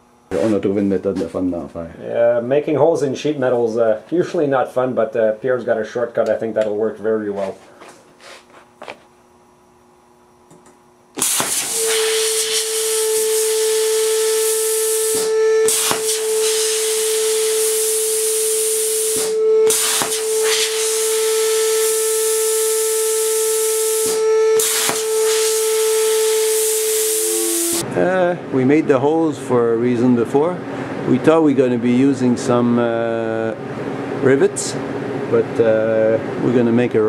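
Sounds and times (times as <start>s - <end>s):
steady whine: 0.0s - 37.0s
plasma cutter hissing: 11.2s - 27.8s.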